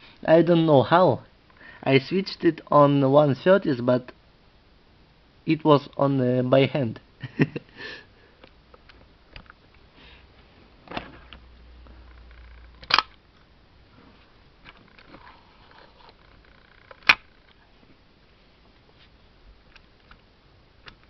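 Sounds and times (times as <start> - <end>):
low steady rustle: 8.2 - 21.0.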